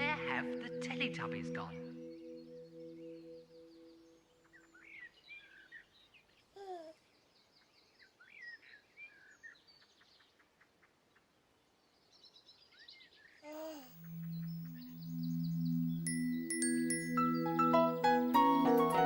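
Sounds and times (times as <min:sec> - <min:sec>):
low steady musical tone: 0:00.0 - 0:04.9, 0:13.9 - 0:19.0
faint birdsong: 0:00.0 - 0:19.0.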